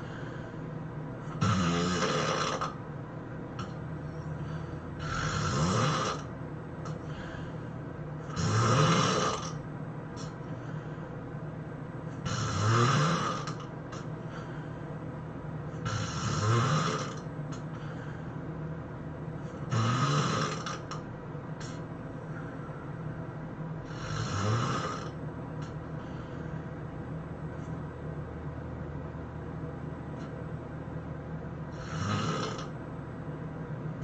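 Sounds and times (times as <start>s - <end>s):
person snoring loudly: 1.2s - 2.8s, 4.4s - 6.3s, 8.3s - 9.6s, 12.2s - 13.7s, 15.8s - 17.3s, 19.5s - 21.0s, 23.8s - 25.2s, 31.7s - 32.8s.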